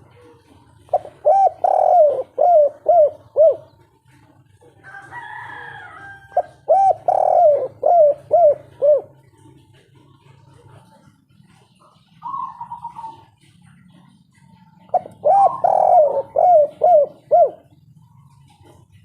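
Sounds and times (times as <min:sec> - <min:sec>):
dove cooing: 0:00.0 - 0:19.0.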